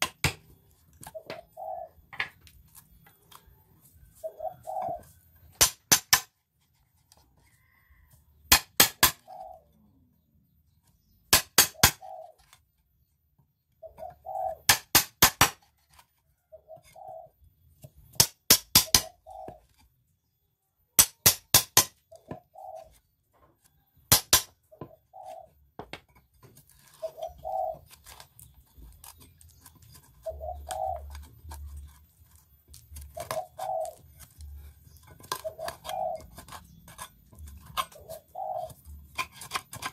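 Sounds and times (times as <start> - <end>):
dove cooing: 1.1 - 2.2, 4.0 - 5.3, 9.1 - 10.2, 11.8 - 12.6, 13.8 - 14.7, 16.3 - 17.4, 18.8 - 19.8, 22.1 - 23.1, 24.7 - 25.7, 26.8 - 28.2, 30.1 - 39.1
mallet striking chisel into wood: 5.5 - 6.3, 8.5 - 9.3, 11.3 - 12.0, 14.7 - 15.7, 18.1 - 19.1, 21.0 - 22.3, 24.1 - 24.9.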